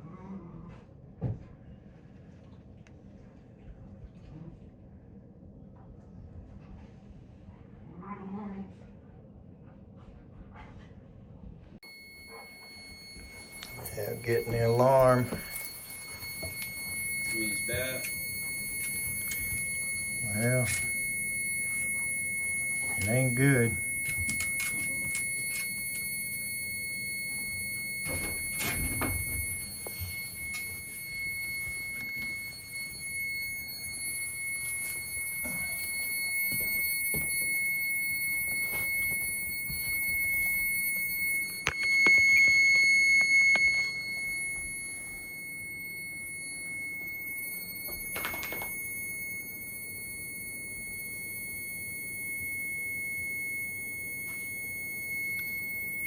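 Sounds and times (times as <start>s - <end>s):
steady high-pitched alarm tone: 11.8s - 56.0s.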